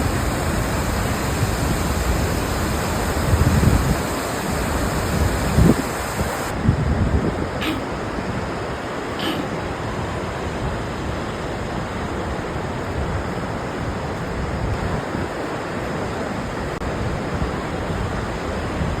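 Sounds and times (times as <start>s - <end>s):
waterfall rushing: 0.0s - 6.6s
wind gusting over microphone: 0.0s - 19.0s.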